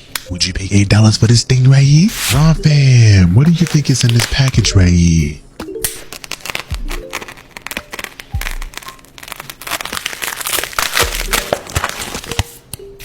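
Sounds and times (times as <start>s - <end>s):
plastic packaging crinkling: 3.5s - 4.7s, 5.9s - 12.8s.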